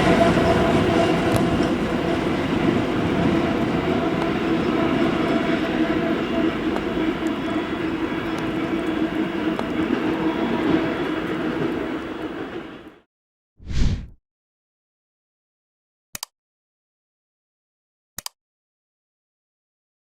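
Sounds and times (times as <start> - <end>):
diesel locomotive engine droning: 0.0 - 13.0
train wheels rumbling on rails: 0.0 - 13.0.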